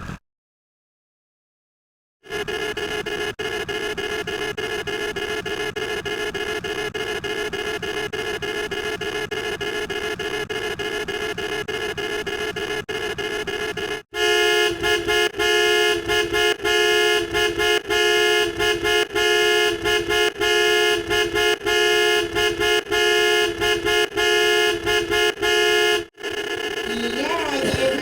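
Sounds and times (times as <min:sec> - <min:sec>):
car horn honking: 0:14.2 - 0:28.0.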